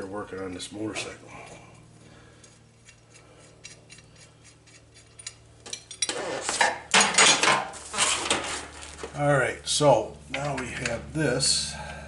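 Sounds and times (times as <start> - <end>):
ratchet wrench clicking: 2.4 - 5.8
metal parts clattering and scraping: 5.0 - 9.0.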